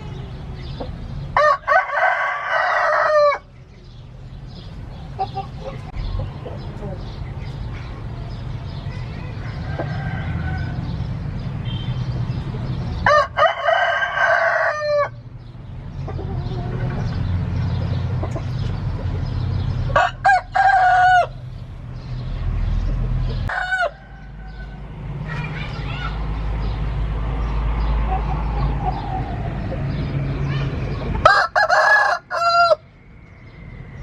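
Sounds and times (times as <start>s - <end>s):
rooster crowing: 1.4s - 3.5s, 9.2s - 10.9s, 13.0s - 15.2s, 19.9s - 21.4s, 23.5s - 24.9s, 31.2s - 32.9s.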